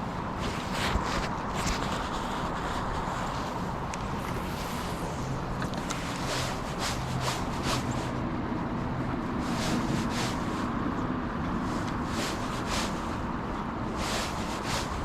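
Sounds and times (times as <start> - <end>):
soft swishes: 0.4 - 8.2, 9.4 - 10.7, 11.6 - 15.0
river water rushing: 3.7 - 8.2, 11.4 - 15.0.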